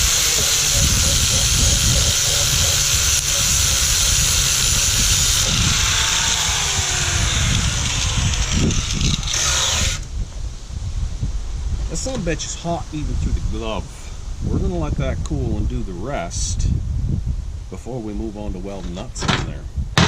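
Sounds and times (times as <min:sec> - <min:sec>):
welding arc hissing: 0:00.0 - 0:10.1.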